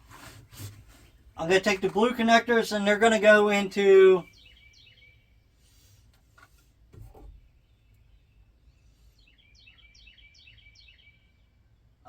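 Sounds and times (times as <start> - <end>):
bird chirping: 4.1 - 5.6, 7.2 - 12.0.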